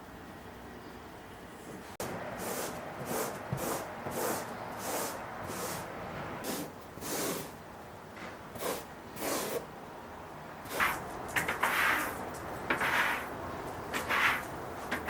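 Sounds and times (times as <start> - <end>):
rubber broom swishing: 10.7 - 13.3, 14.0 - 15.0.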